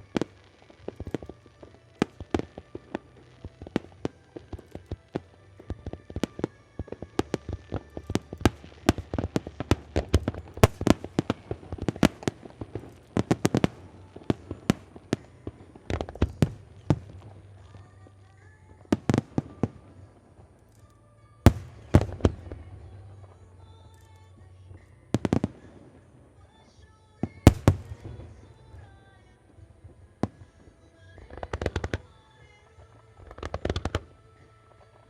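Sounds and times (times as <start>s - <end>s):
fireworks bangs and crackles: 0.0s - 20.8s, 21.4s - 35.0s.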